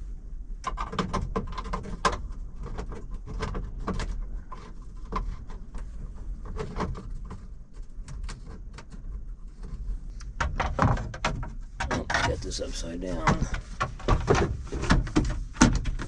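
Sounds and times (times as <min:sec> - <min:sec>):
steady low hum: 0:11.6 - 0:16.0.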